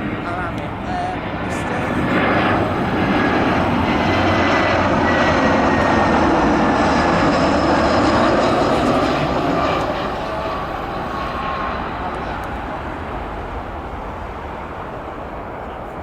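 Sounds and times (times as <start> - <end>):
high engine whine: 0.0 - 16.0
jet engines rushing: 0.0 - 16.0.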